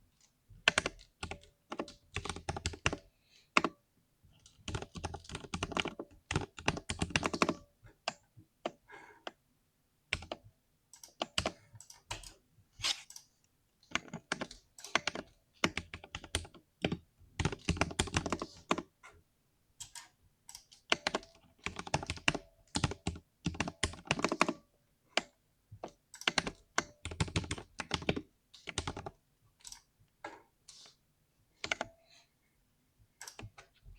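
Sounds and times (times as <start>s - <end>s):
mechanical keyboard typing: 0.6s - 3.0s, 4.4s - 7.6s, 10.1s - 10.4s, 13.9s - 18.9s, 19.8s - 24.6s, 25.2s - 29.9s, 31.6s - 31.9s.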